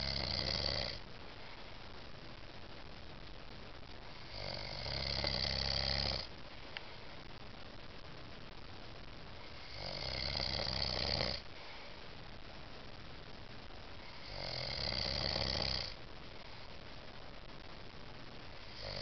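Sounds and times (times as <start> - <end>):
man snoring: 0.0 - 1.0, 4.2 - 6.3, 9.5 - 11.4, 14.2 - 16.0, 18.7 - 19.0.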